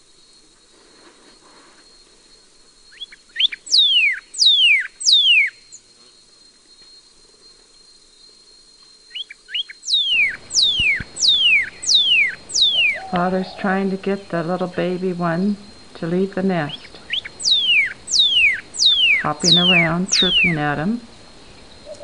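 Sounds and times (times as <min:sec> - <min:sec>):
cardinal singing down-slurred whistles: 0:02.9 - 0:05.8, 0:09.1 - 0:21.0.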